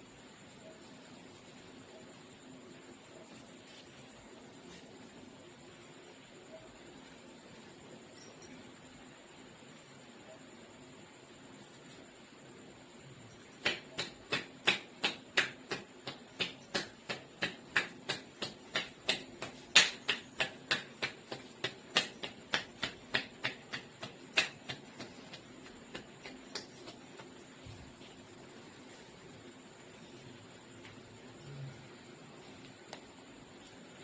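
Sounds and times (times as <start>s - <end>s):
hands slapping head: 13.6s - 27.0s.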